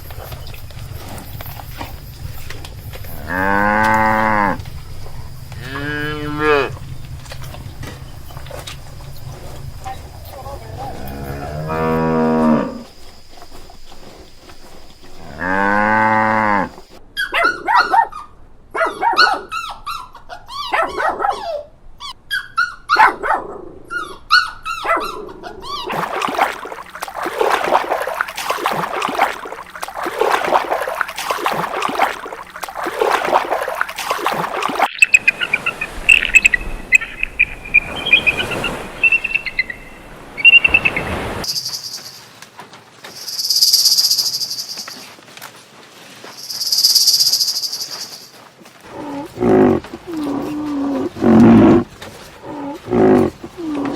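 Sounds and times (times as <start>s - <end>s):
high repeated chirping: 34.9s - 42.2s, 43.2s - 45.1s
long drawn-out animal calls: 48.9s - 53.9s
rapid grunting: 48.9s - 53.9s.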